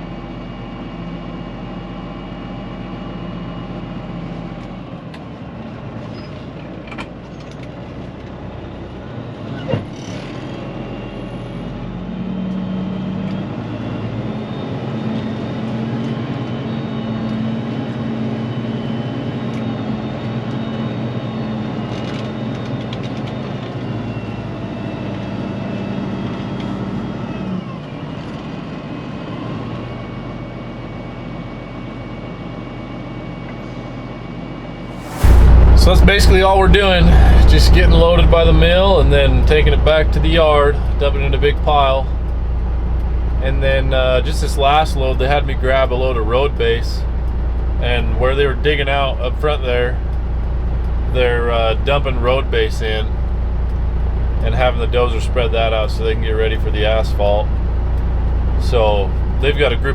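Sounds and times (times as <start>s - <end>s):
diesel truck engine running: 0.0s - 33.5s, 34.6s - 59.9s
sharp knock: 35.0s - 40.2s.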